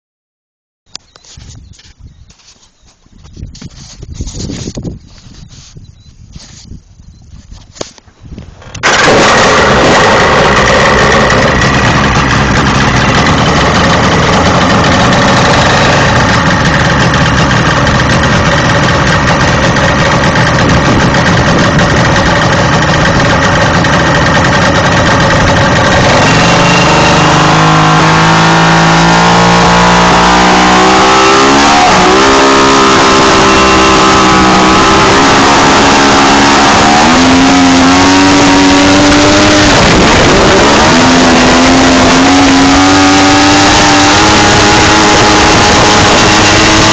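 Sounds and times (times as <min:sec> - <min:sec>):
outboard motor roaring: 0:08.6 - 0:46.9.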